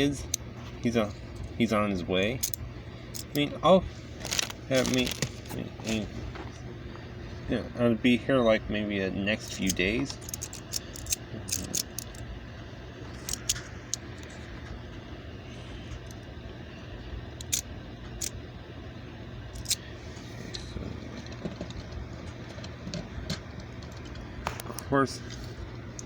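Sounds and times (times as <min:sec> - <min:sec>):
steady low hum: 0:00.0 - 0:26.0
plastic toy clicks and handling: 0:09.6 - 0:12.2.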